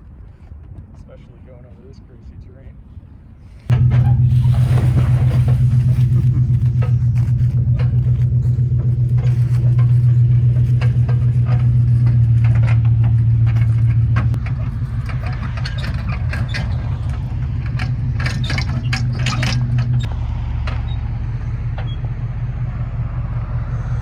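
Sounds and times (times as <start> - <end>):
firewood knocking and rattling: 3.7 - 20.1
vehicle engine running: 3.7 - 24.0.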